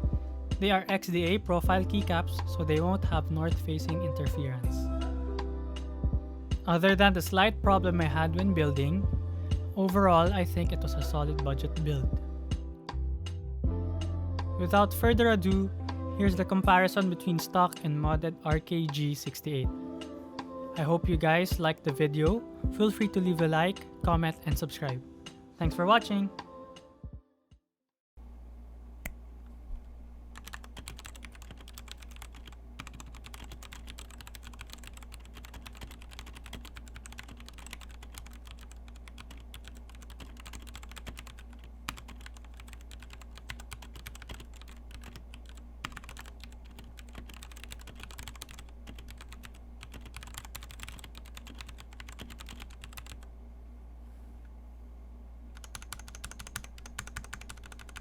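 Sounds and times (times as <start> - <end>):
steady low hum: 1.4 - 16.8, 28.2 - 58.0
mechanical keyboard typing: 30.4 - 53.2, 55.6 - 58.0.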